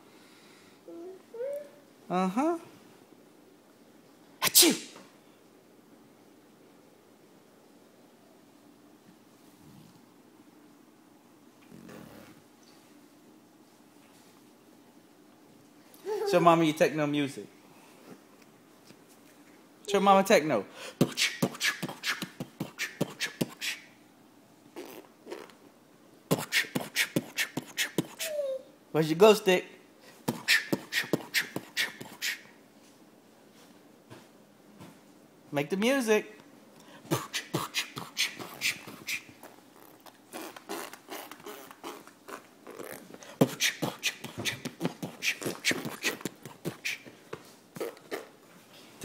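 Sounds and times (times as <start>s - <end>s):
soft voice sounds: 0.8s - 2.7s, 16.0s - 16.6s
beatboxing clicks and puffs: 21.0s - 23.9s, 26.3s - 28.3s, 30.2s - 32.5s, 37.1s - 47.2s, 47.8s - 48.4s.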